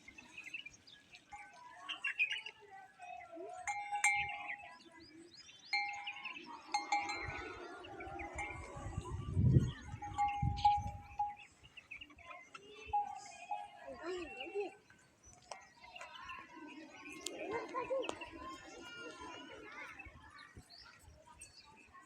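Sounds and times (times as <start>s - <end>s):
birds chirping: 0.0s - 22.0s
metal bells clanging: 3.6s - 4.8s, 5.7s - 11.6s, 12.9s - 14.6s.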